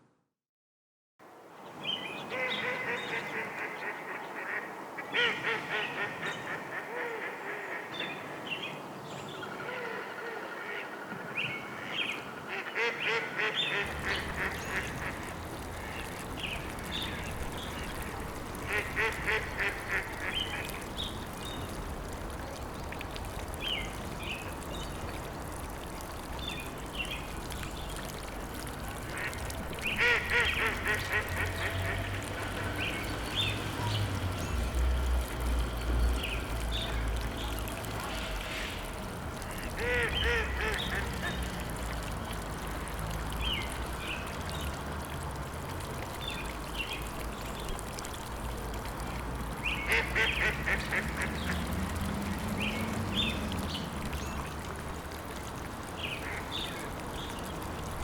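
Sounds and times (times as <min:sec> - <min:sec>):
ducks quacking: 0:12.5 - 0:16.2, 0:18.6 - 0:20.7, 0:30.0 - 0:32.8, 0:39.5 - 0:41.5, 0:49.9 - 0:51.7.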